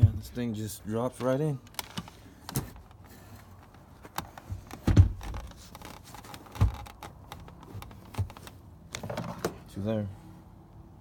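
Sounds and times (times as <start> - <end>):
car seat thumping on steel track: 4.5 - 5.5.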